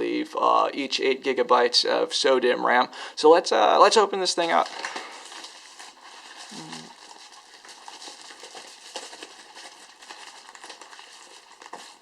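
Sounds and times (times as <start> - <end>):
packaging crinkling: 4.4 - 12.0.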